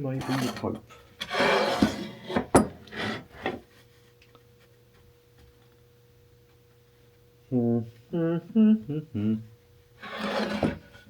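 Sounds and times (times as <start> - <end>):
steady electrical hum: 0.0 - 11.0
man humming: 7.4 - 9.6.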